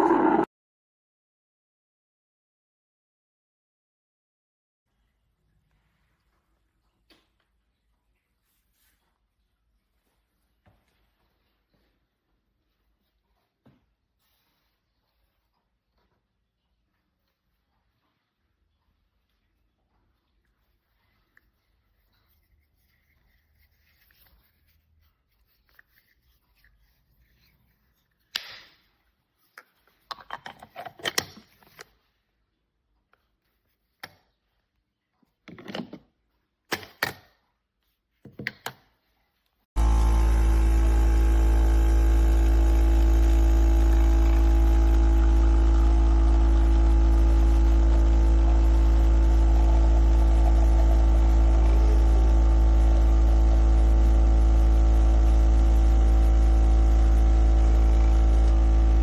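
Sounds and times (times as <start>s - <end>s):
espresso machine pump humming: 0.0s - 0.5s, 39.8s - 59.0s.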